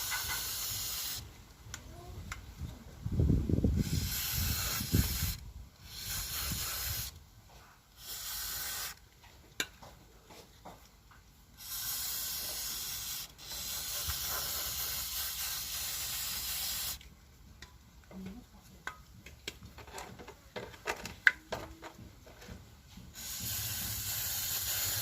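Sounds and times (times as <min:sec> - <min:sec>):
aerosol spray hissing: 0:00.0 - 0:01.3, 0:03.8 - 0:07.2, 0:08.0 - 0:09.0, 0:11.6 - 0:17.0, 0:23.1 - 0:25.0.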